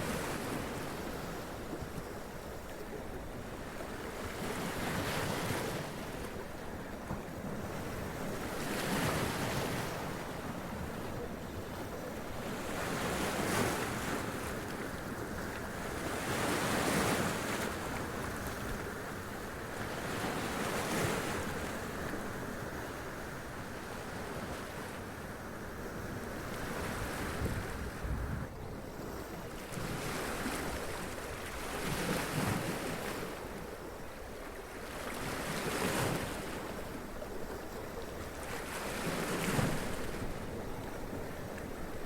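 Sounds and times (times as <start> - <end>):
wind on microphone: 26.6 - 28.8.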